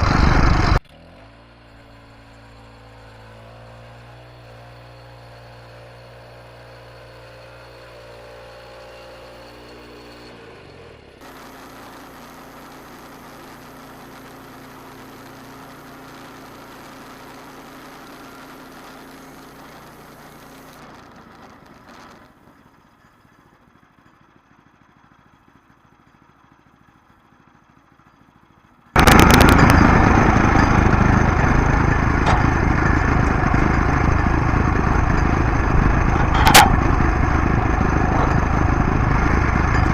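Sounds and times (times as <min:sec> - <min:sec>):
engine starting and running: 0:00.0 - 0:39.9
machine hum: 0:11.2 - 0:22.4, 0:29.0 - 0:39.9.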